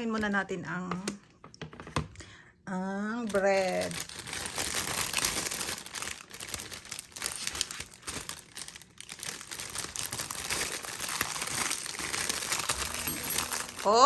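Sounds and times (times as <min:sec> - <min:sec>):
plastic wrapper crinkling: 0:03.2 - 0:14.0.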